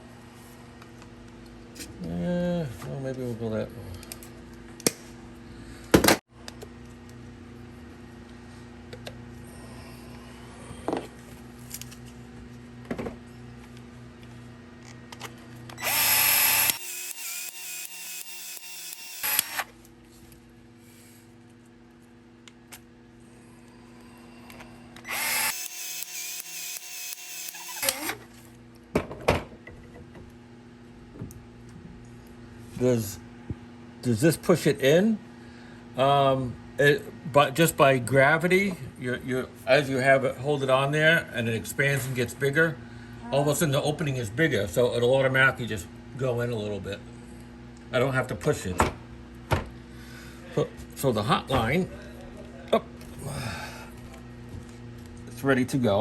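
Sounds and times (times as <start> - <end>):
pipe expansion tool pulsing: 15.8 - 19.7, 24.4 - 28.2.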